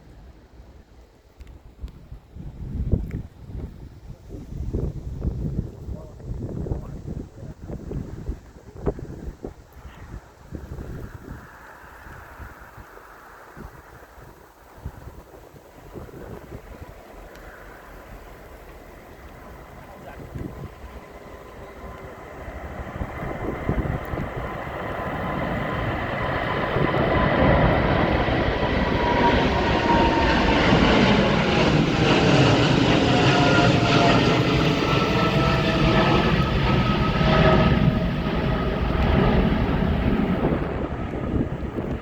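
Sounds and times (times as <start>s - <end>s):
jet engine roar: 4.3s - 42.0s.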